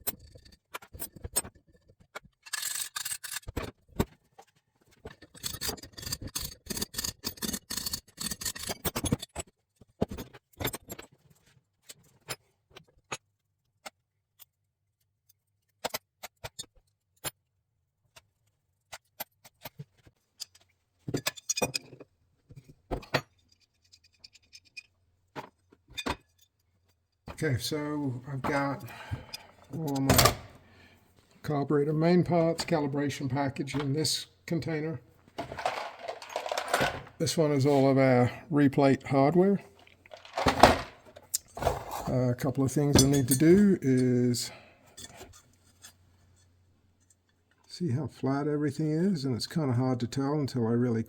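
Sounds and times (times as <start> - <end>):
small metal parts clinking: 2.4 - 3.7, 35.4 - 37.7, 39.8 - 42.2, 42.8 - 43.7.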